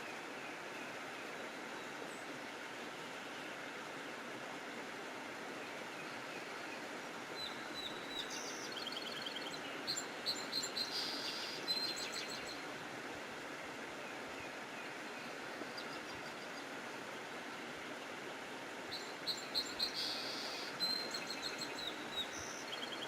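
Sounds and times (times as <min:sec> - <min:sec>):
steady background hiss: 0:00.0 - 0:23.0
songbirds chirping and trilling: 0:05.7 - 0:12.7, 0:18.9 - 0:23.0.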